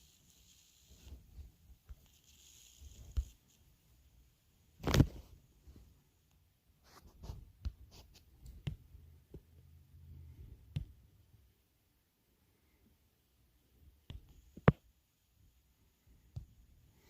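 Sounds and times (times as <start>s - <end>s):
mouse handling noises on desk: 1.8s - 3.6s, 4.8s - 5.3s.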